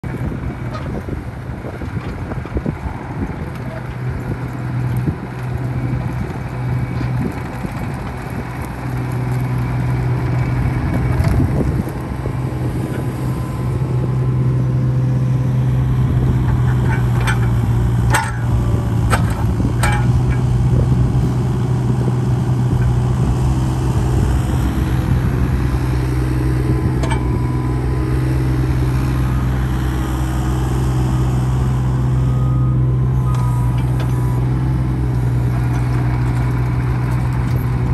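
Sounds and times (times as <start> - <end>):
diesel engine running: 0.0 - 37.9
metallic clanks: 16.5 - 20.5.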